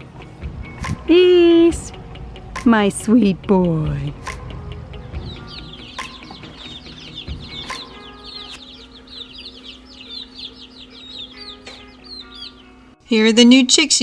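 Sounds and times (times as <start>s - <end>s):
steady low hum: 0.0s - 13.1s
chicks peeping: 4.2s - 13.0s.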